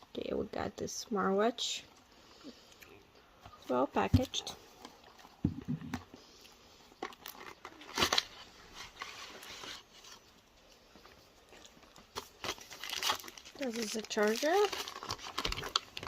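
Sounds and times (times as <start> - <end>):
packaging rustling and crinkling: 6.8 - 16.0.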